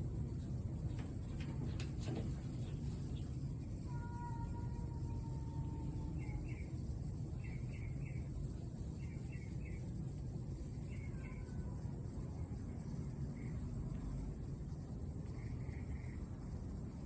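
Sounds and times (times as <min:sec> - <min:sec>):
low outdoor rumble: 0:00.0 - 0:17.0
small bird chirping: 0:02.5 - 0:10.0, 0:10.6 - 0:11.8.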